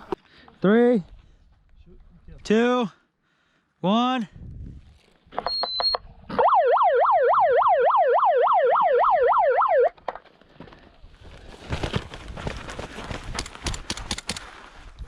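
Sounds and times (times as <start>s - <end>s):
short high beeps: 5.4s - 6.0s
electronic siren sweeping: 5.6s - 9.9s.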